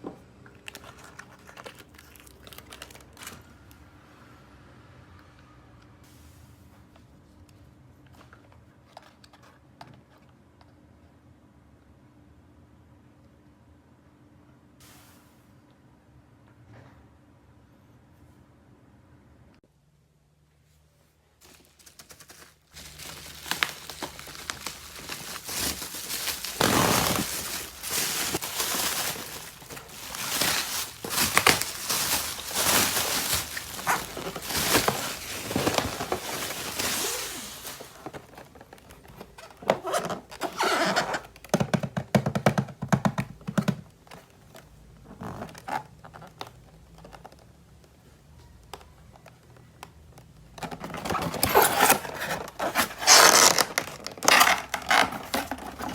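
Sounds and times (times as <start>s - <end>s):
plastic packaging rustling: 0.6s - 3.7s, 21.4s - 41.6s, 50.6s - 55.9s.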